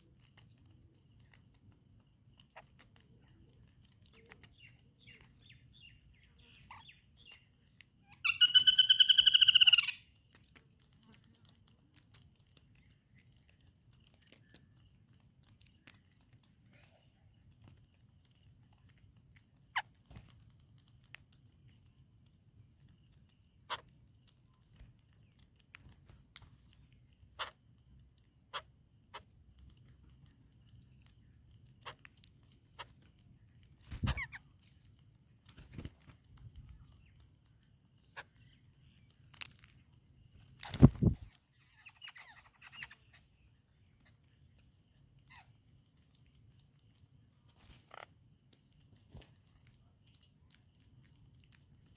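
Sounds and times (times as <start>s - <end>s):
birds chirping: 0.0s - 48.2s.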